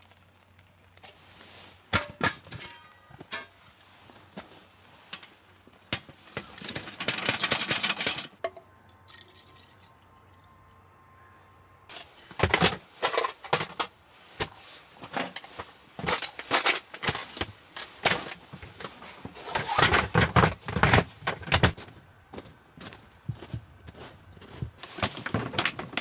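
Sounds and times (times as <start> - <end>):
objects knocking and clattering: 2.0 - 3.6, 4.4 - 8.6, 11.9 - 21.8, 24.5 - 26.0.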